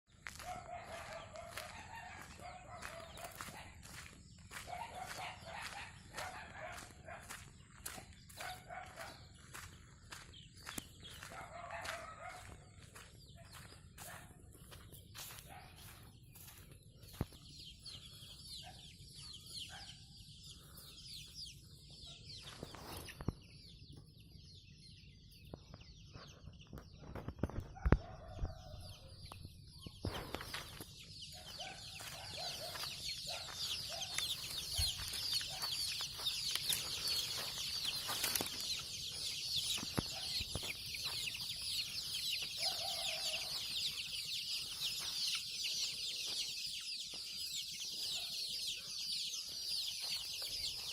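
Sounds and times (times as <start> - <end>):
chickens cheeping and clucking: 0.1 - 50.9.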